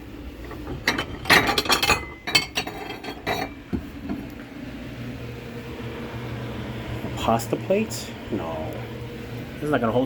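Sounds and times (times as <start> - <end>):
low steady hum: 0.0 - 10.0
dishes clinking: 0.5 - 3.6.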